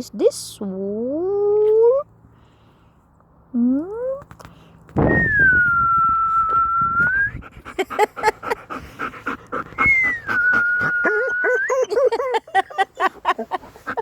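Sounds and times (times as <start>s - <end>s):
person whistling long notes: 5.1s - 7.4s, 9.8s - 11.8s
dog panting: 7.4s - 12.3s, 13.0s - 14.0s
dog whimpering: 9.6s - 12.1s.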